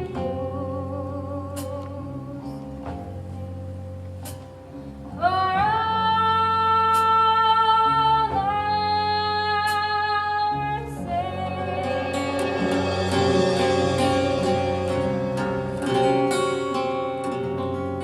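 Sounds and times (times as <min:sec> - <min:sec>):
guitar accompaniment: 0:00.0 - 0:18.0
woman singing sustained notes: 0:10.2 - 0:14.6.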